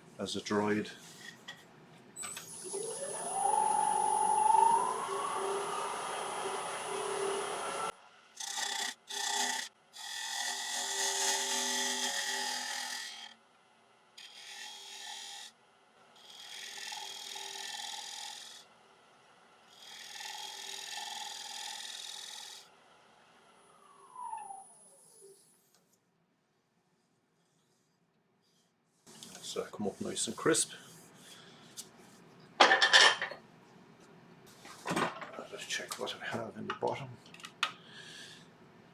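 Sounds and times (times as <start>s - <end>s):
wood lathe whine: 2.3s - 13.4s, 14.2s - 15.5s, 16.2s - 18.8s, 19.6s - 22.8s, 23.6s - 25.6s
turning tool cutting wood: 2.4s - 13.4s, 14.2s - 15.5s, 16.2s - 18.7s, 19.7s - 22.7s.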